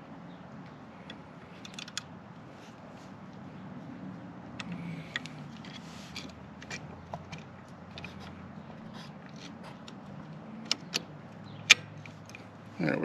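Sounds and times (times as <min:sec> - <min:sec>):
metal parts clicking and scraping: 0:01.1 - 0:02.1, 0:04.6 - 0:08.4.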